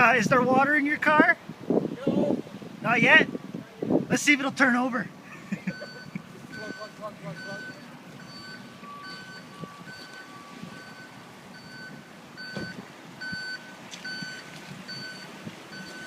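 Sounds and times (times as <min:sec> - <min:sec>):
electronic warning beeper: 0:05.7 - 0:16.0.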